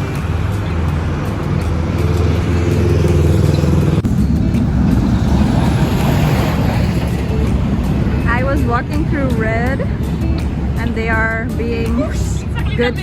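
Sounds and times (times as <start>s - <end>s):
road traffic engines humming: 0.0s - 13.0s.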